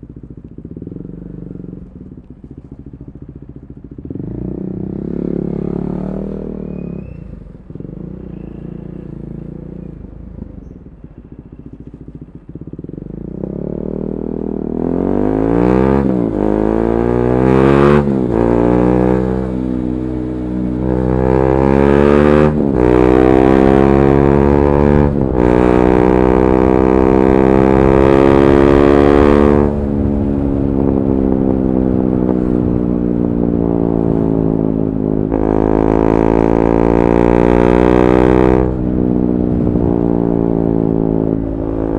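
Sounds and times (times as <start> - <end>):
motorcycle engine accelerating: 0.0 - 41.9.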